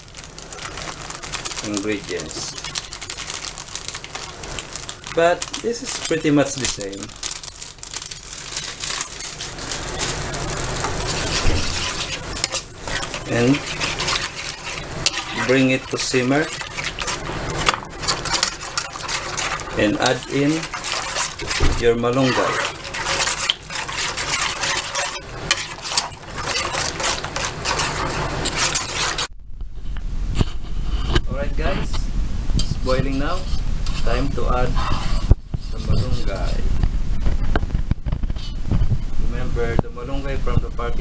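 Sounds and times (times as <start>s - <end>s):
cooking pot hissing: 0.0s - 29.3s
metal utensil scraping a pot: 0.6s - 29.3s, 32.6s - 36.7s.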